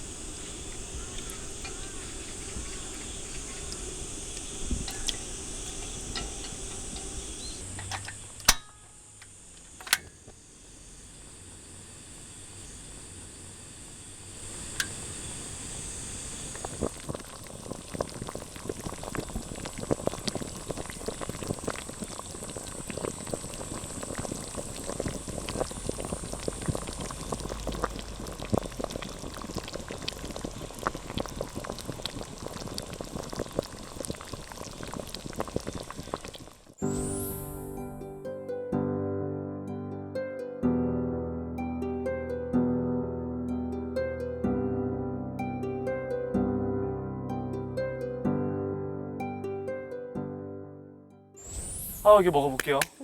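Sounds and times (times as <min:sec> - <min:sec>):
soup bubbling: 0:00.0 - 0:08.5, 0:14.3 - 0:38.0, 0:51.4 - 0:53.0.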